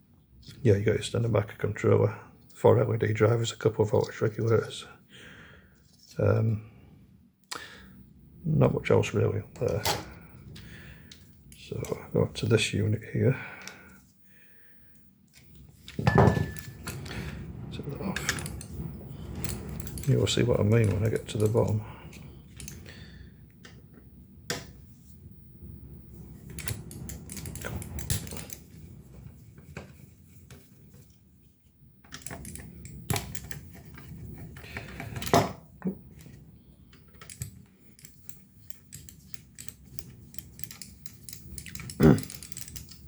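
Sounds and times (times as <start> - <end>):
tools and parts clicking and rattling: 15.3 - 17.1, 18.2 - 21.8, 22.5 - 22.9, 26.3 - 28.8, 32.0 - 43.0.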